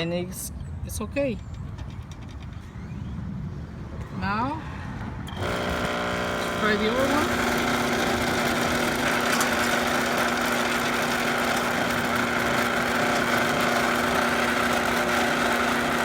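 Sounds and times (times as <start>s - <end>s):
electric motor humming: 5.3s - 16.0s.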